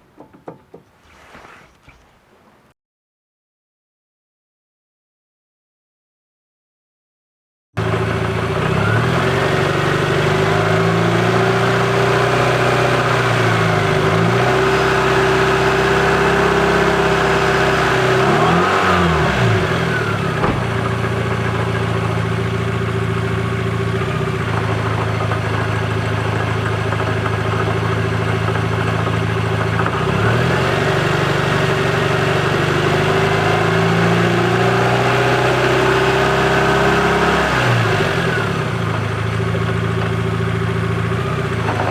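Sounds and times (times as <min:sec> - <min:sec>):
car engine revving: 0:07.9 - 0:39.2.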